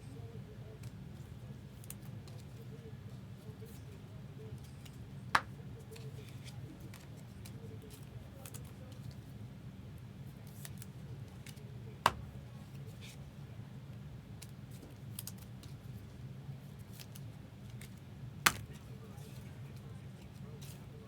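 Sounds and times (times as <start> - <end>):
card clicks and crinkles: 4.6 - 9.2, 10.4 - 13.2, 14.4 - 15.8, 16.8 - 20.8.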